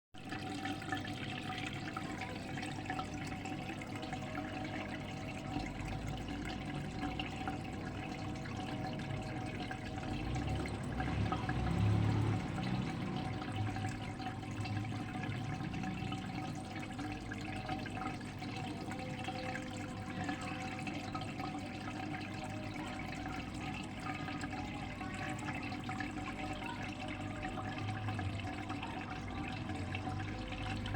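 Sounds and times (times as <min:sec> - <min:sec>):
faint constant hum: 0:00.2 - 0:30.9
running and trickling water: 0:00.2 - 0:30.9.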